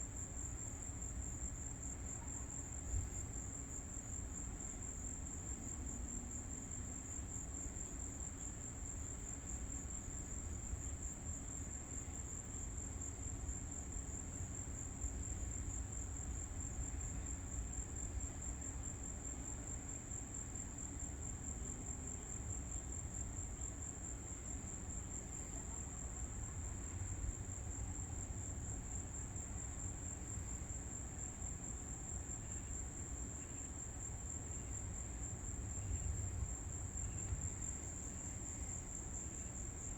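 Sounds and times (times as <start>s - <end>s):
crickets chirring: 0.1s - 39.9s.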